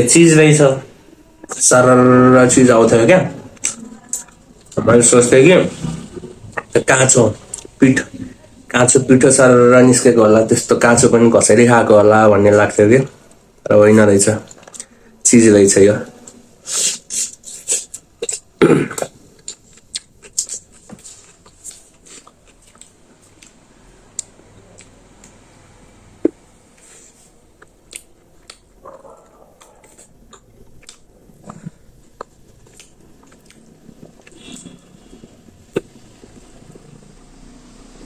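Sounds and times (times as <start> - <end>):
person chewing food: 6.2 - 8.4, 16.8 - 25.4, 26.2 - 36.9.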